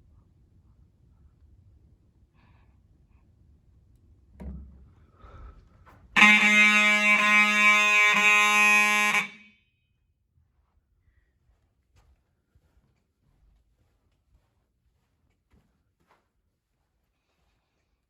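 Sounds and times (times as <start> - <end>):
buzzy fire alarm horn: 6.1 - 10.0.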